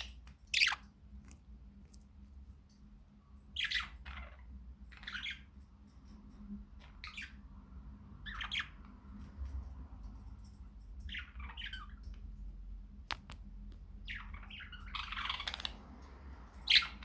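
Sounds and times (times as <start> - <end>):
budgerigars chirping: 0.0 - 0.8, 3.6 - 5.5, 6.8 - 7.5, 8.2 - 8.9, 11.1 - 12.0, 14.0 - 15.9, 16.6 - 17.0
faint low hum: 0.0 - 17.0.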